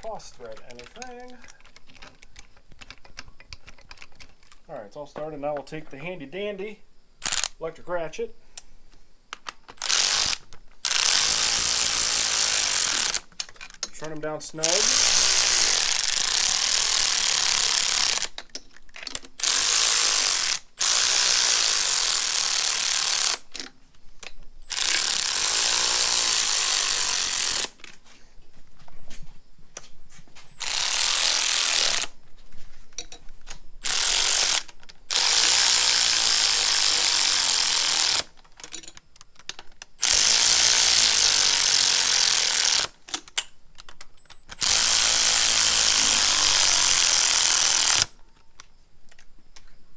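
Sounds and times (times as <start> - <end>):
electric ratchet running bolts: 7.2 - 7.6, 9.7 - 13.3, 14.0 - 18.5, 19.1 - 23.7, 24.6 - 27.8, 30.6 - 32.2, 33.8 - 38.9, 40.0 - 43.0, 44.5 - 48.2.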